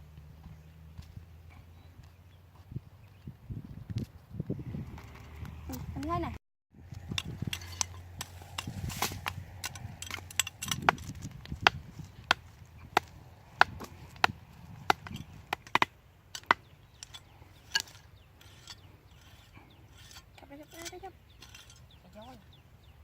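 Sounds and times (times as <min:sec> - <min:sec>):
blade chopping wood: 0:07.1 - 0:18.0.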